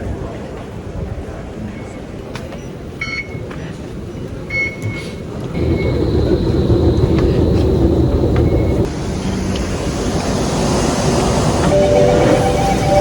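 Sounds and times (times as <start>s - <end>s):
vehicle rumble in motion: 4.8s - 13.0s
thin high whine: 11.6s - 13.0s
short high beeps: 11.7s - 13.0s.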